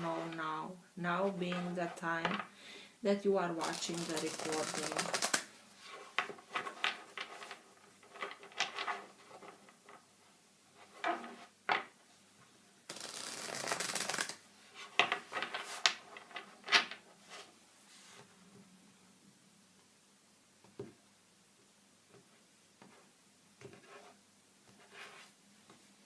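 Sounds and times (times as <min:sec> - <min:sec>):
cards being shuffled: 0:03.6 - 0:05.5, 0:12.9 - 0:14.4.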